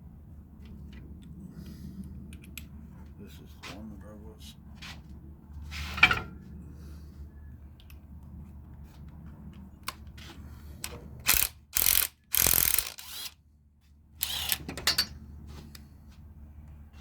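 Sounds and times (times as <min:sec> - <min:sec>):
rapid mechanical clicking: 0:11.3 - 0:13.4.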